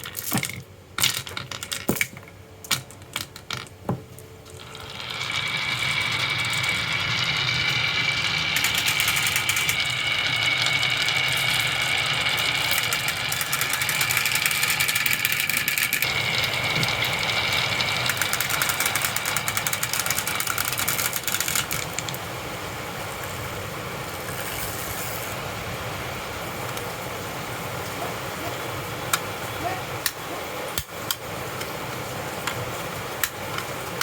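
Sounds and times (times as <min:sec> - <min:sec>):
marbles rolling on a track: 0:00.0 - 0:03.8, 0:04.5 - 0:22.3
marbles clicking and clattering: 0:00.0 - 0:22.2.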